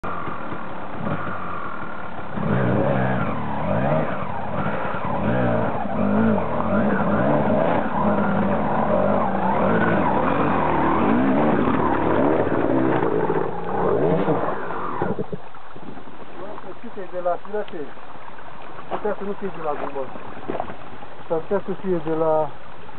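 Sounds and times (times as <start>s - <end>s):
dirt bike engine revving: 0.0s - 15.4s.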